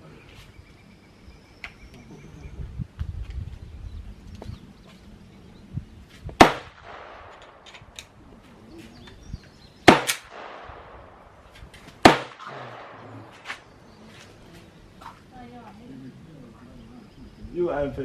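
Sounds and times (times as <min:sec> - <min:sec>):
faint gunshot pops: 0:06.4 - 0:07.6, 0:09.9 - 0:11.0, 0:12.0 - 0:13.6
loud gunshots ringing out: 0:06.4 - 0:07.6, 0:09.8 - 0:11.4, 0:12.0 - 0:13.6.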